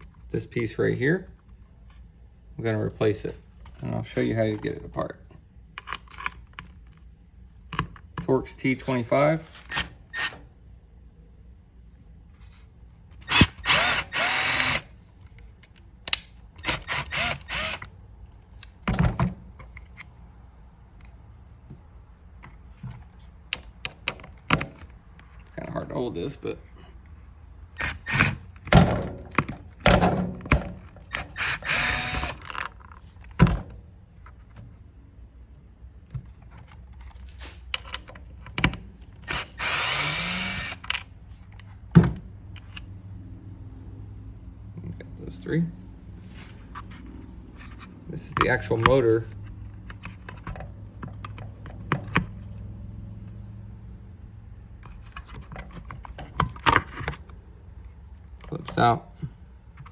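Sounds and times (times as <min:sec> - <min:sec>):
plastic and metal parts clicking: 0:47.6 - 0:52.6.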